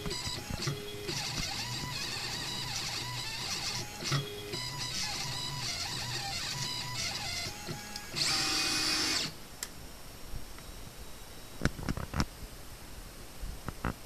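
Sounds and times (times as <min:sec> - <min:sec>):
stepper motors whining: 0:00.0 - 0:09.4.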